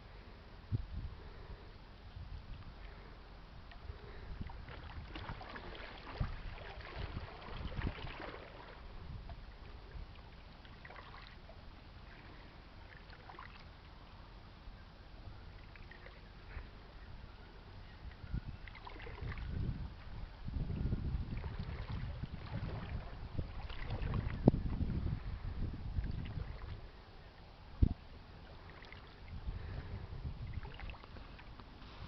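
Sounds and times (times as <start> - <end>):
wind rumbling on microphone: 0.0 - 13.7, 15.2 - 32.0
steady low noise: 0.0 - 18.6.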